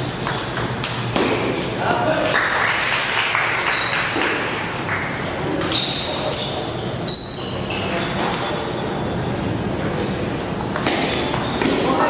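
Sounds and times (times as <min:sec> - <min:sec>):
murmur of hall noise: 0:00.0 - 0:12.0
shoe squeaks on floor: 0:03.6 - 0:12.0.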